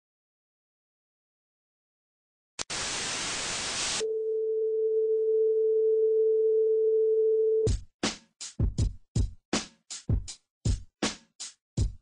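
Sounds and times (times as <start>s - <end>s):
static hiss: 2.6s - 4.0s
music drum beats: 7.7s - 12.0s.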